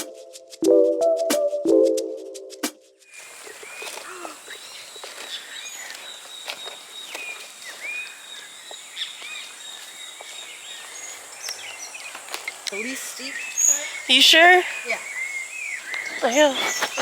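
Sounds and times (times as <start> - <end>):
birds chirping: 3.1 - 17.0
high insect drone: 3.1 - 17.0.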